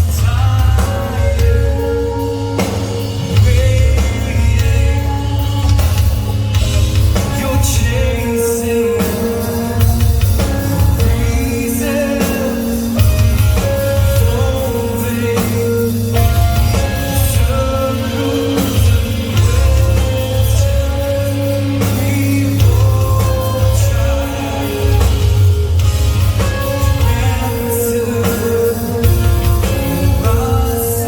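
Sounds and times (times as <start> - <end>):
bass guitar: 0.0 - 31.0
drum kit: 0.0 - 31.0
electric guitars: 0.0 - 31.0
sung vocals: 0.0 - 31.0.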